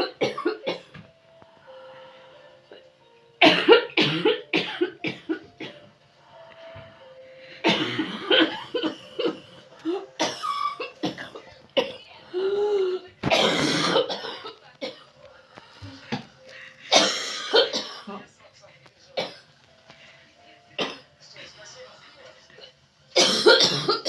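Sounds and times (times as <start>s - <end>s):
person coughing harshly: 0.0s - 1.0s, 3.4s - 5.8s, 7.6s - 12.0s, 13.2s - 15.0s, 16.9s - 18.2s, 20.8s - 21.0s, 23.2s - 24.0s.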